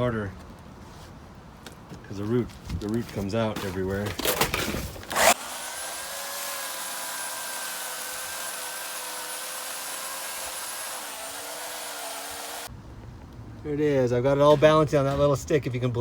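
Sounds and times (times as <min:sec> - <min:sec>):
electric chainsaw cutting wood: 0:05.1 - 0:12.7.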